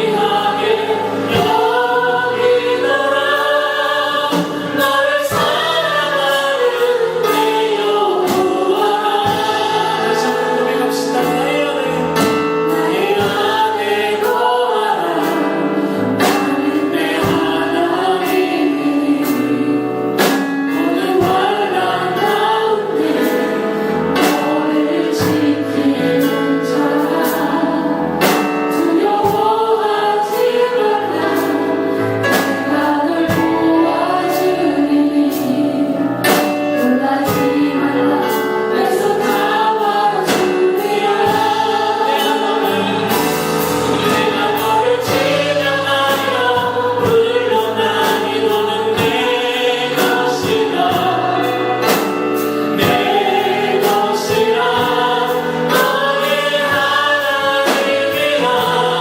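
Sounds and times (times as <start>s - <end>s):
steady drum beat: 0.0s - 15.5s, 16.1s - 19.4s, 36.2s - 59.0s
choir singing worship song: 0.0s - 59.0s
instrumental accompaniment: 0.0s - 59.0s.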